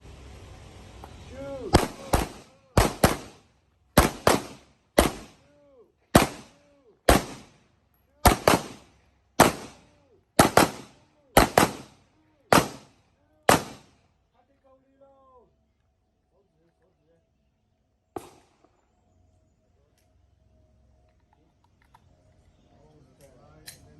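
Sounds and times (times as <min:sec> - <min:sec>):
handgun shots: 0:01.8 - 0:03.3, 0:04.0 - 0:05.3, 0:06.2 - 0:06.5, 0:10.4 - 0:11.9, 0:12.5 - 0:12.9, 0:13.5 - 0:13.8.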